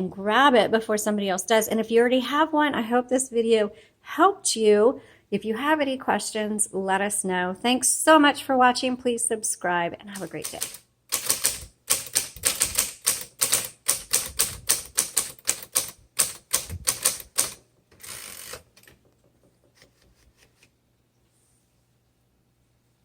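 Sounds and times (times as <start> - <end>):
manual typewriter keystrokes: 10.2 - 19.1.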